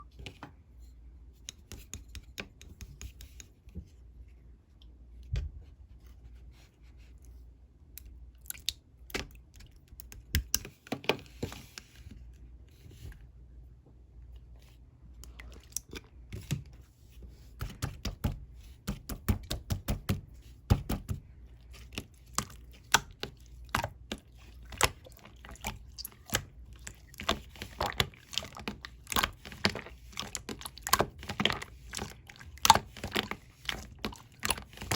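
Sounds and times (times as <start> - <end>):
slime squished by hand: 20.7 - 34.9.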